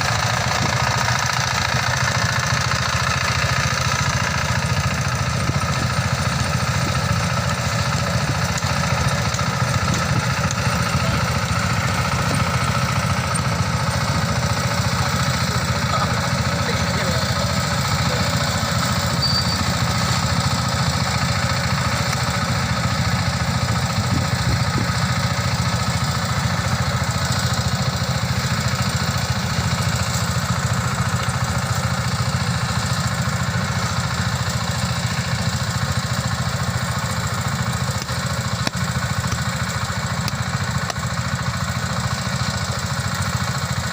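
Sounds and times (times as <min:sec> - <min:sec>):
harvester engine running: 0:00.0 - 0:43.9.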